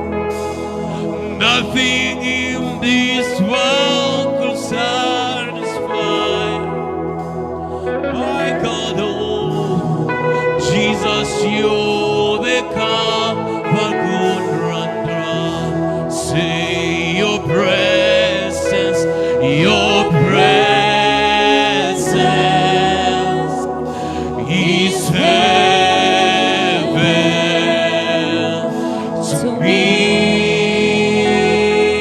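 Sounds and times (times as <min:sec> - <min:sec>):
gospel singing: 0:00.0 - 0:32.0
keyboard backing: 0:00.0 - 0:32.0.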